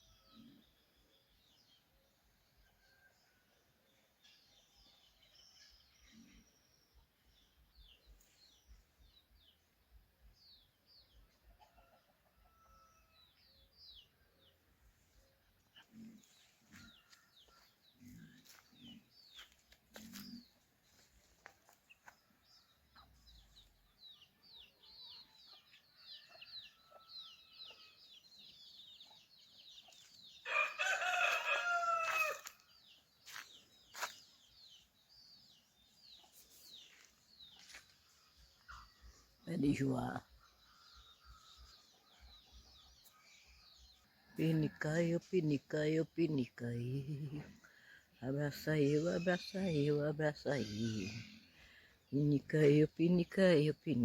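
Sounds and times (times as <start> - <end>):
small birds chirping: 4.0 - 12.0, 12.8 - 54.0
rooster crowing: 30.4 - 32.5.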